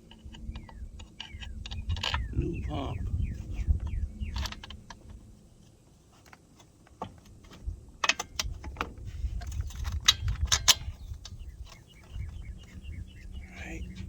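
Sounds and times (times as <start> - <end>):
metal parts clinking: 9.4 - 11.8.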